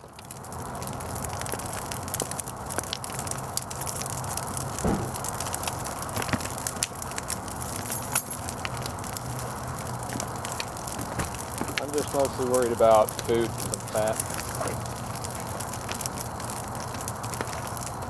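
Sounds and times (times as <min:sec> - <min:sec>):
fire crackling and popping: 0:00.0 - 0:18.0
fire rushing: 0:00.0 - 0:18.0
dull low knock: 0:04.8 - 0:05.2.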